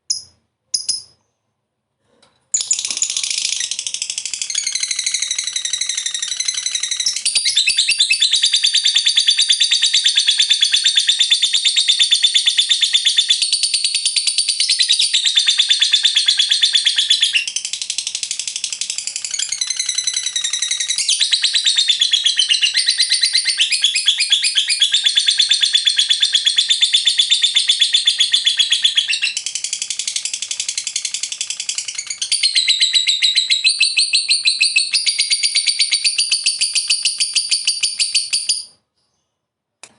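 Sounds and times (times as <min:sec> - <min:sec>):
lovebird chattering trill: 0:00.1 - 0:01.1.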